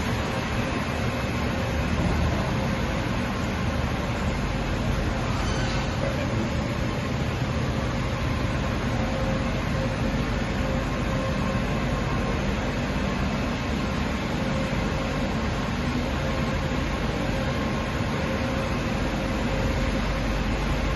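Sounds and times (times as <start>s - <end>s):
faint steady whine: 0.0s - 20.9s
machining centre mechanical hiss: 0.0s - 20.9s.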